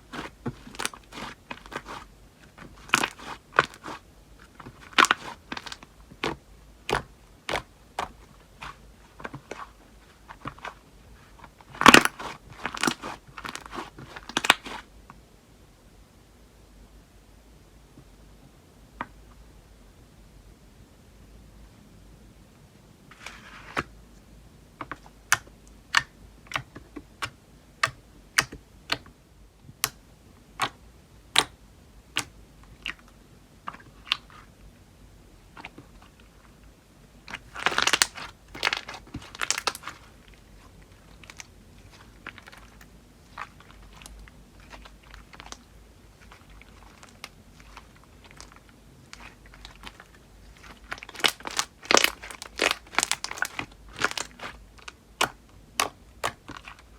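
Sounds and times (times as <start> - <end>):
slime crackling and crunching: 0.0 - 14.9, 37.2 - 56.9.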